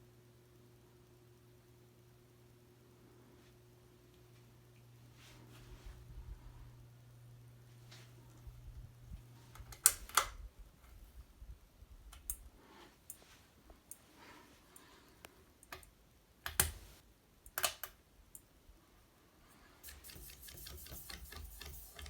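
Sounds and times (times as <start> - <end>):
ceiling fan motor humming: 0.0 - 17.0, 19.4 - 22.0.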